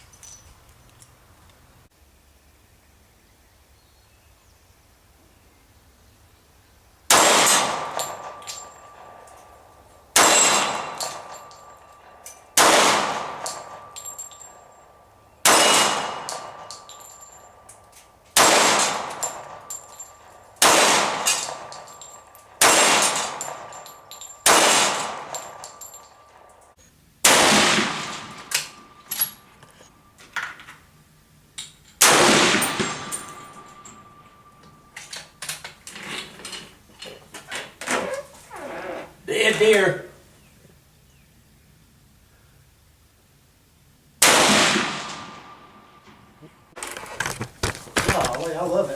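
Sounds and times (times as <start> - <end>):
rifle shots echoing: 7.1 - 14.6, 15.4 - 17.7, 18.3 - 26.5, 27.2 - 29.0, 32.0 - 34.9, 44.2 - 46.3.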